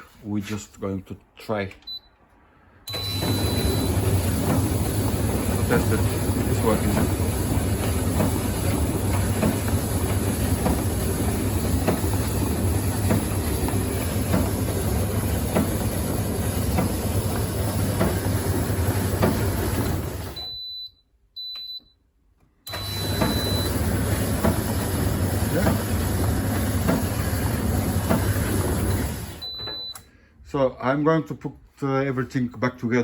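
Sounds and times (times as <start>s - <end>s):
dryer motor humming: 2.9s - 20.6s, 22.7s - 30.0s.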